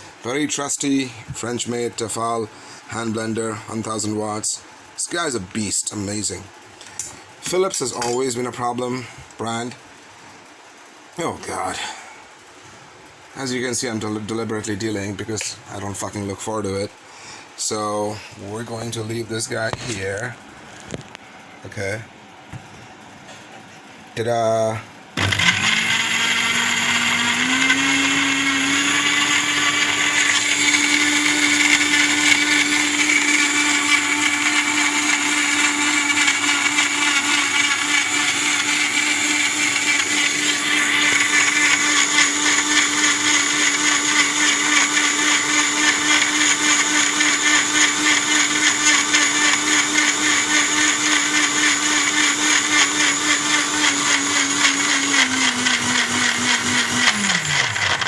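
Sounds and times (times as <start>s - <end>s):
mixer grinder motor whining: 25.2s - 58.0s.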